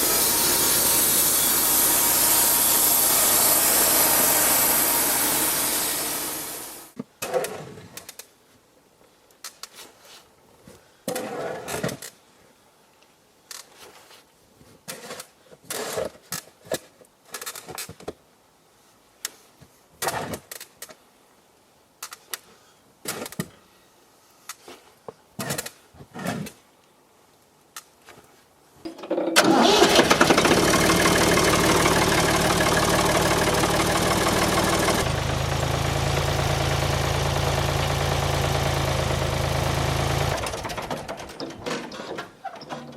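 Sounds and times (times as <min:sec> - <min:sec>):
engine running: 0:00.0 - 0:06.9, 0:29.4 - 0:41.3
band sawmill cutting: 0:00.0 - 0:07.0, 0:29.4 - 0:41.3.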